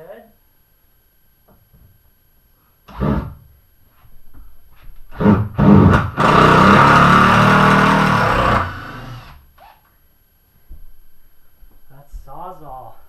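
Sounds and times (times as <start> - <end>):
power tool driving screw: 2.9 - 3.4, 5.1 - 9.8.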